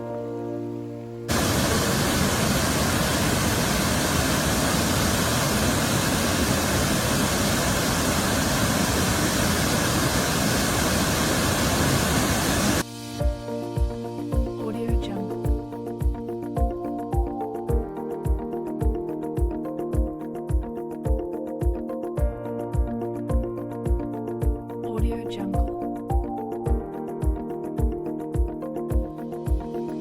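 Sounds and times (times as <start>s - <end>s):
background music: 0.0s - 1.4s, 12.8s - 30.0s
waterfall rushing: 1.3s - 13.0s.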